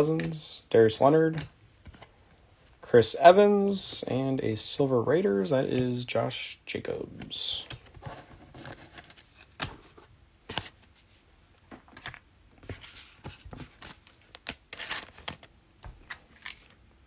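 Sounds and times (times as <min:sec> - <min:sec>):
cards being flipped: 0:11.9 - 0:16.8.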